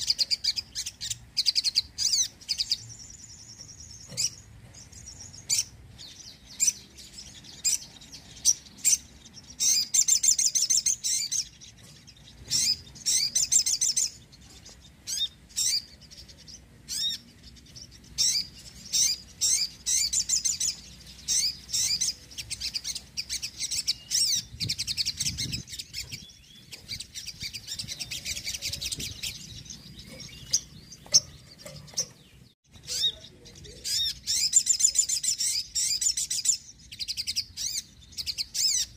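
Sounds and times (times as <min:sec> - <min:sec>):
bird chirping and trilling: 0:00.0 - 0:38.9.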